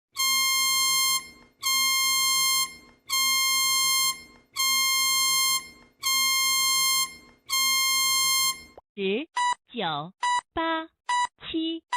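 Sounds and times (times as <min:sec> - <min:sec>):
buzzy high-pitched alarm beep: 0:00.2 - 0:08.8.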